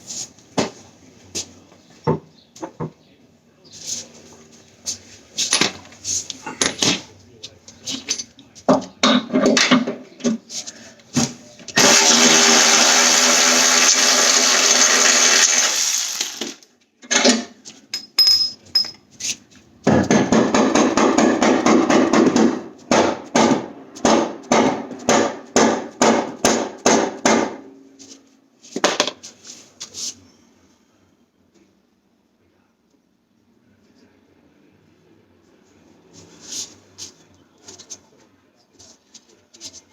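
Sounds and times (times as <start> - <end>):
power tool running: 11.8 - 16.6
sharp metal knocks: 19.9 - 27.7.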